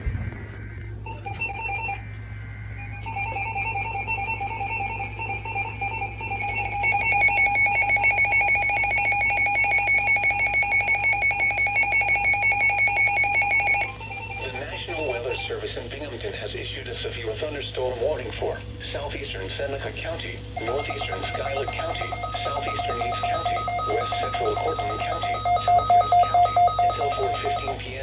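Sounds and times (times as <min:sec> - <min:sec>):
two-tone attention signal: 0:00.0 - 0:15.5, 0:19.8 - 0:27.9
data header tone bursts: 0:19.9 - 0:27.8.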